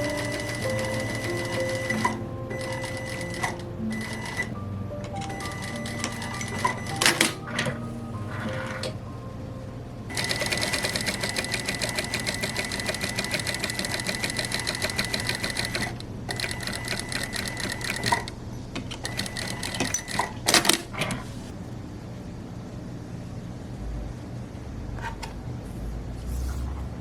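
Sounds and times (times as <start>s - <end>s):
electric sewing machine stitching: 0.0s - 4.6s, 10.1s - 18.3s, 19.0s - 20.8s.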